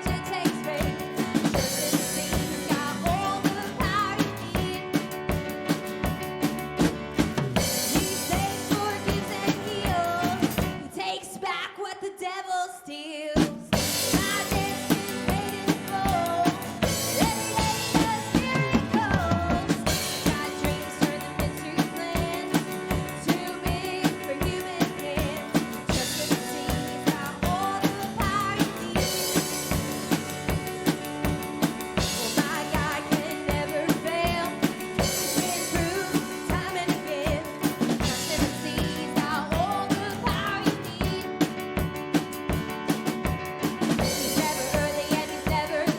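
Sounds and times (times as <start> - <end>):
drum kit kick and snare: 0.0 - 10.9, 13.4 - 45.9
live band playing: 0.0 - 11.5, 13.4 - 45.9.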